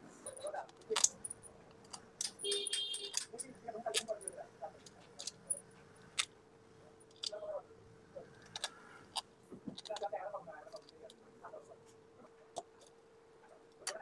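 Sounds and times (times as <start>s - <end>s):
hand tools clinking on metal: 0.3s - 5.8s
ringing metallic clink: 2.4s - 3.3s.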